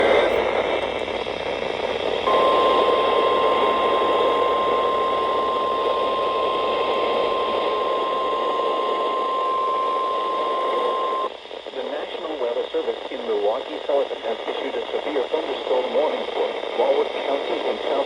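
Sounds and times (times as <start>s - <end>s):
radio static hiss: 0.0s - 18.0s
steady alarm tone: 2.2s - 11.3s.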